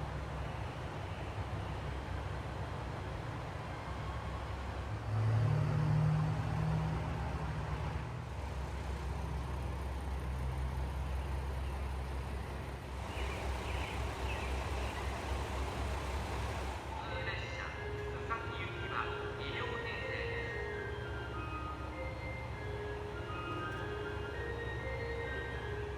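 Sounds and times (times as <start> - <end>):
vehicle engine rumbling: 0.0 - 17.0.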